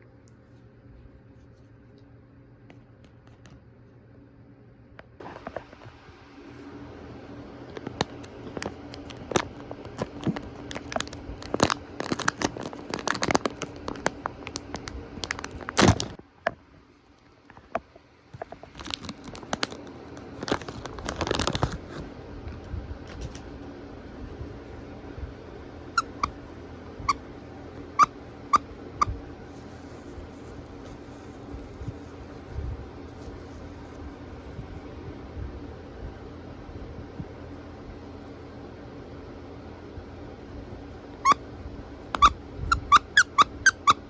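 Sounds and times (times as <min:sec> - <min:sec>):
plastic bag crinkling: 0:07.9 - 0:16.2, 0:18.4 - 0:22.1, 0:29.4 - 0:34.6
packaging ripping: 0:08.5 - 0:16.2, 0:18.7 - 0:22.0.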